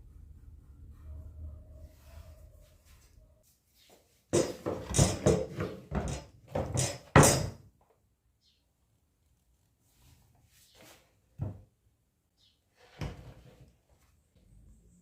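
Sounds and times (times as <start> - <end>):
objects knocking and scraping: 4.3 - 7.6.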